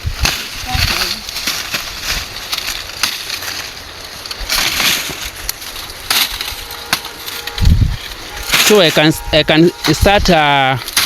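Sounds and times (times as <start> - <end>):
cobs snapping: 0.0 - 7.6, 10.8 - 11.0
dry plants rustling and crackling: 0.0 - 11.0.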